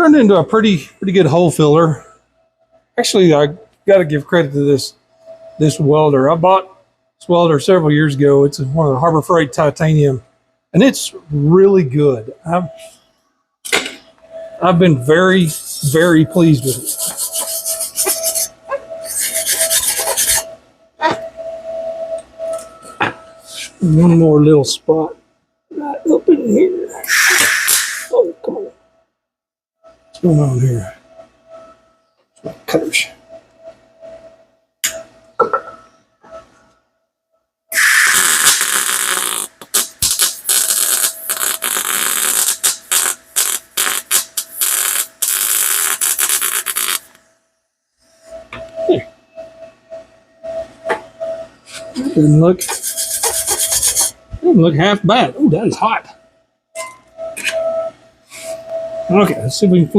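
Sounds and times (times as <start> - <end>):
welding arc crackling and hissing: 15.3 - 20.4, 27.0 - 28.2, 37.7 - 47.2, 52.2 - 54.2
stiff brush scrubbing metal: 16.6 - 18.5, 52.6 - 54.1.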